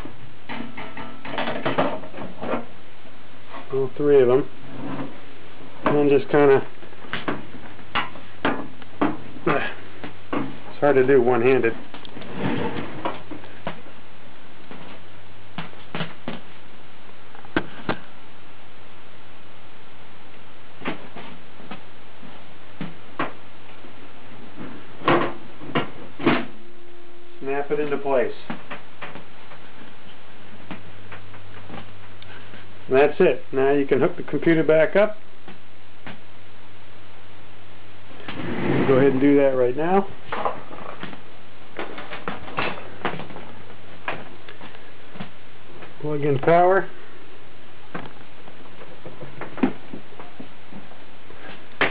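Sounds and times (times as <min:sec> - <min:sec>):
steady low hum: 0:00.0 - 0:51.9.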